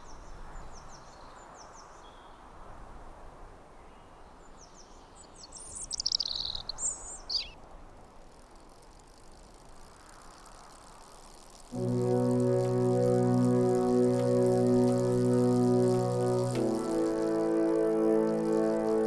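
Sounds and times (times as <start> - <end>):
outdoor background hiss: 0.0 - 19.0
birds chirping: 5.4 - 7.6
high falling bird chirps: 5.4 - 7.6.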